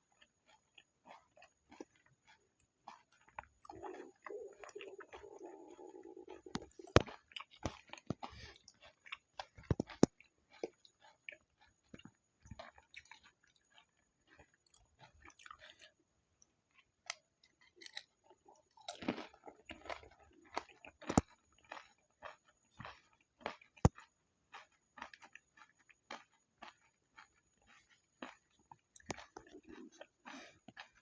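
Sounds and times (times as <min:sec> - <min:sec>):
crunchy chewing: 0:00.0 - 0:31.0
wet mouth clicks: 0:01.7 - 0:15.9, 0:27.2 - 0:30.9.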